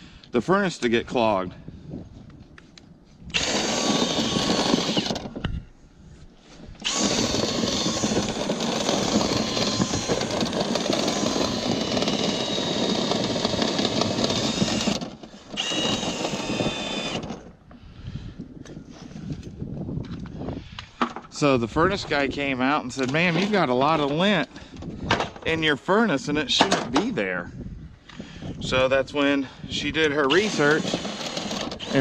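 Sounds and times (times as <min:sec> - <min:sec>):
power drill running: 0:03.3 - 0:05.4, 0:06.8 - 0:17.5, 0:30.2 - 0:32.0.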